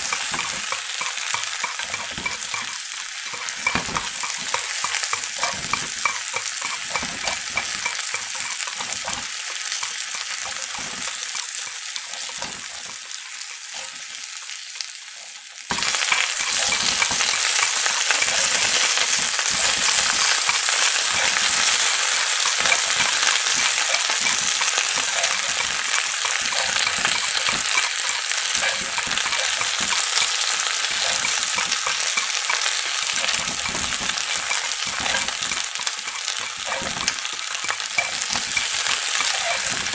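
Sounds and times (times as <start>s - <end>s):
chicken sizzling in hot oil: 0.0s - 39.9s.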